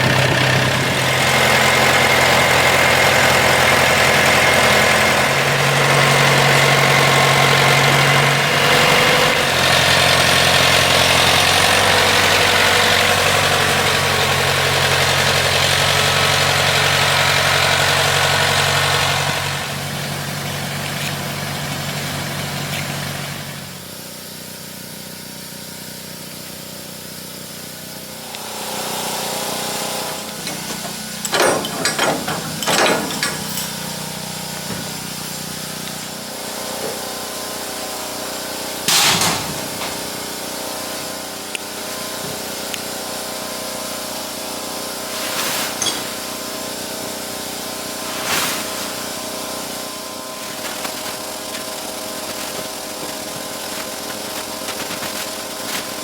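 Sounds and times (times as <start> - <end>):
quad bike engine idling: 0.0 - 23.9, 48.9 - 56.0.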